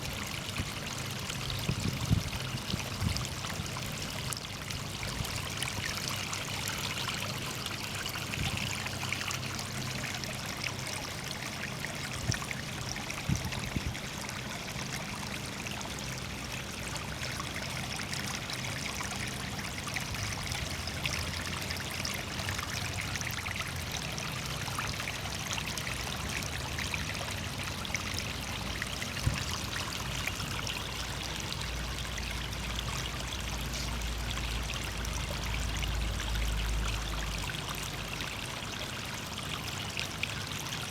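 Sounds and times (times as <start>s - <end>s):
water trickling and splashing: 0.0s - 40.9s.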